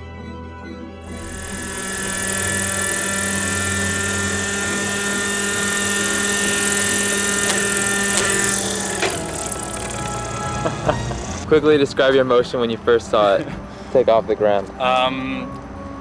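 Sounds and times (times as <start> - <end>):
model helicopter engine whining: 1.0 - 11.5.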